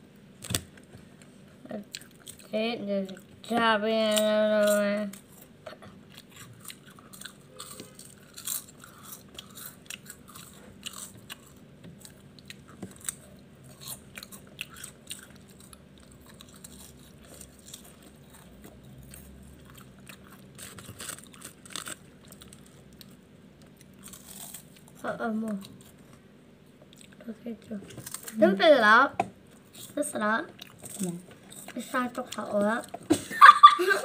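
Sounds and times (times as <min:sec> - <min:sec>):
wafer bars being bitten and chewed: 0:06.2 - 0:24.9.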